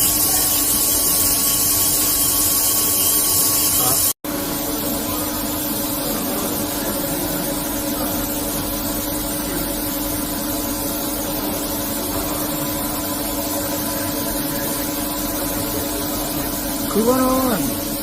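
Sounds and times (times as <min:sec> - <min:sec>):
mill machine humming and whining: 0:00.0 - 0:18.0.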